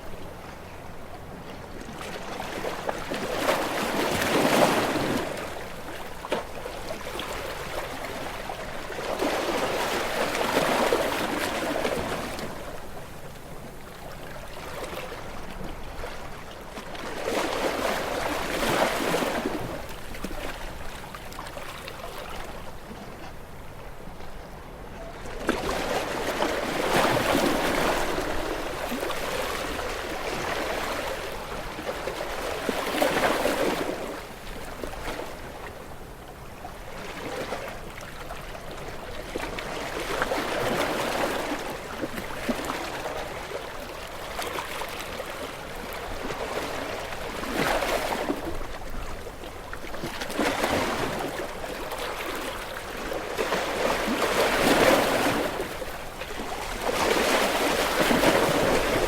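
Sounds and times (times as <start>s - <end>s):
sea waves washing on shore: 25.5s - 59.0s.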